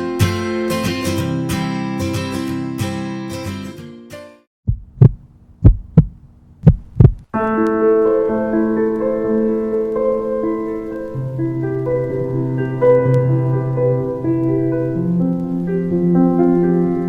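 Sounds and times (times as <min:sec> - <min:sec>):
heartbeat thumps: 0:04.6 - 0:07.3
keyboard music with held chords: 0:07.4 - 0:17.0.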